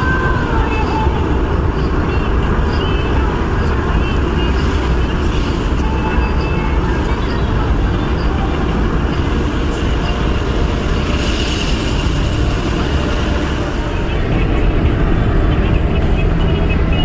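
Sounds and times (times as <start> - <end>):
car engine and tyres on wet road: 0.0 - 17.0
rain hiss: 3.2 - 14.1.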